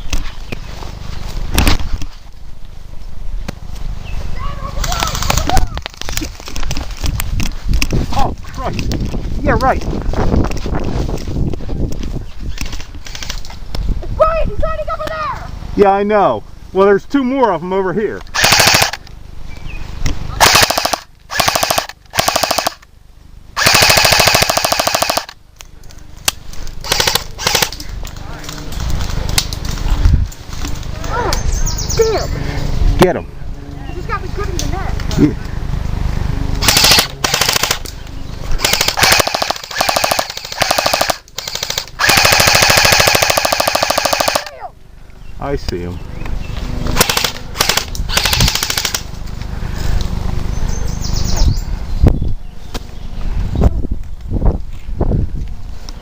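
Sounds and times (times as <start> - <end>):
airsoft rifles firing bursts: 18.3 - 19.0, 20.4 - 22.8, 23.6 - 25.4, 26.8 - 27.8, 36.6 - 37.9, 38.6 - 44.6, 46.9 - 49.1.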